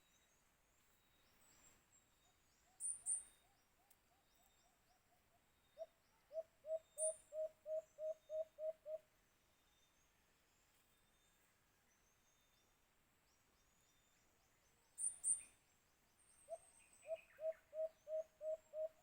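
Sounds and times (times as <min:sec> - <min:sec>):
dove hooting: 0:06.3 - 0:09.0, 0:17.0 - 0:19.0.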